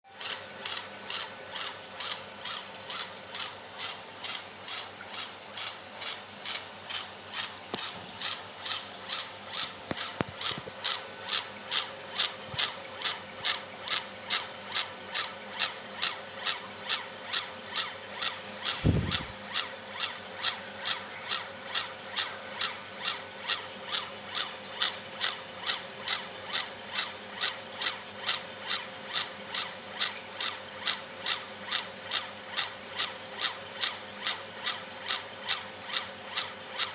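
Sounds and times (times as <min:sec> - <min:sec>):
steady machine hum: 0:02.8 - 0:28.8.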